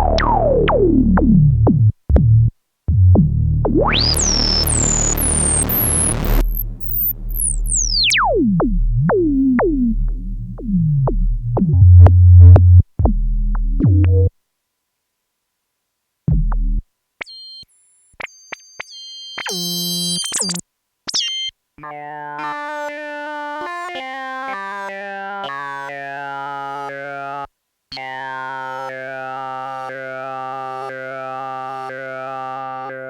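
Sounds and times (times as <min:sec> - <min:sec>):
low synth bass: 0:00.0 - 0:14.3
high held synth tones: 0:03.6 - 0:10.0, 0:17.2 - 0:21.5
synthesizer laser zaps: 0:03.7 - 0:08.4.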